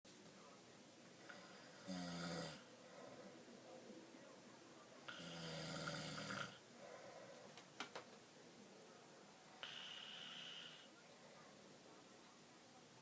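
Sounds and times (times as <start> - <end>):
man snoring: 1.5 - 2.7, 5.1 - 6.6, 9.6 - 10.9
soft breathing: 2.6 - 3.8, 6.6 - 7.7, 9.5 - 11.7.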